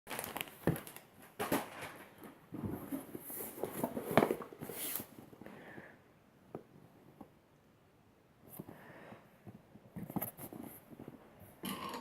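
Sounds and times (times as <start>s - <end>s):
rustling: 0.1s - 5.6s, 8.4s - 11.8s.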